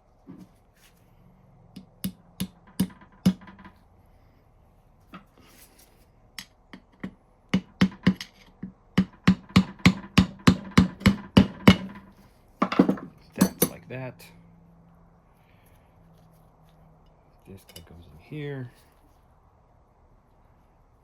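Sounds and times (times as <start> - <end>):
hammer striking metal punch: 1.8 - 3.7, 7.6 - 8.3, 9.0 - 13.8.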